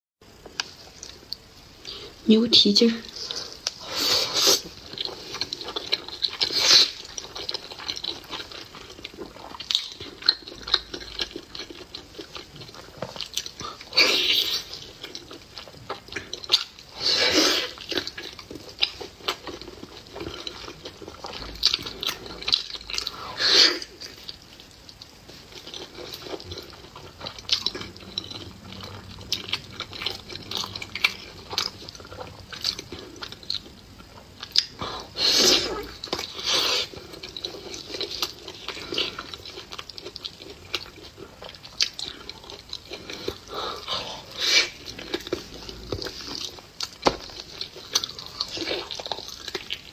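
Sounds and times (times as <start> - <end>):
wet chewing: 3.1 - 49.9.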